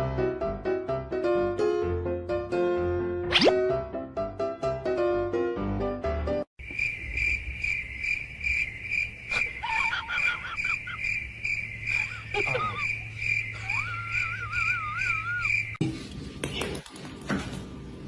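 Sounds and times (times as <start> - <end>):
cricket chirping: 6.6 - 15.8
wavering high-pitched calls: 9.4 - 15.8.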